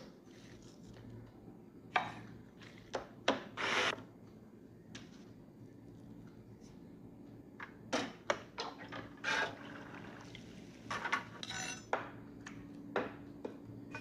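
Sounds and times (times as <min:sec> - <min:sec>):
utensils clinking on dishes: 0:11.1 - 0:12.0.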